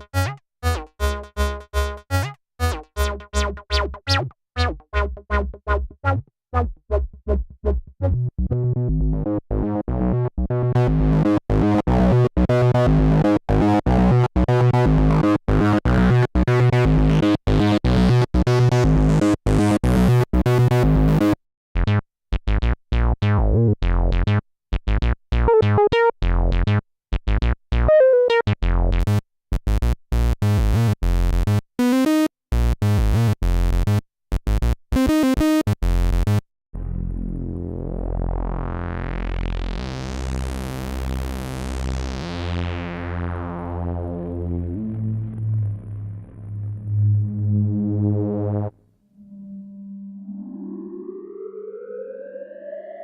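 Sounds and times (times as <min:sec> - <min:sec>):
synth playing short bass notes: 0:43.8 - 0:52.0.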